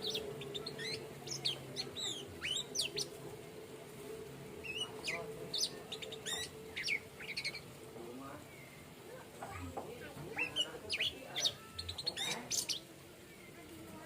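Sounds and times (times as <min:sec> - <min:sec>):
thrush singing high whistled notes: 0:00.0 - 0:03.2, 0:04.6 - 0:07.8
low steady hum: 0:00.0 - 0:14.0.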